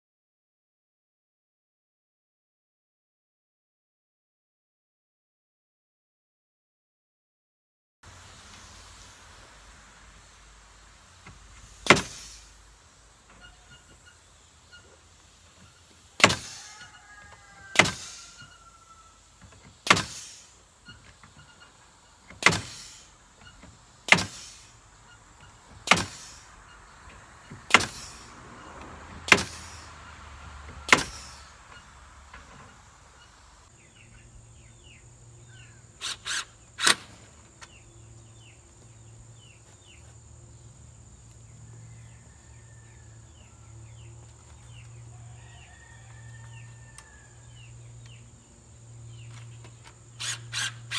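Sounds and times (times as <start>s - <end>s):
fasteners striking into wood: 11.2s - 12.3s, 16.2s - 16.6s, 17.8s - 18.2s, 19.4s - 20.4s, 21.0s - 24.6s, 25.4s - 26.4s, 27.1s - 28.2s, 29.3s - 29.8s, 30.9s - 31.3s.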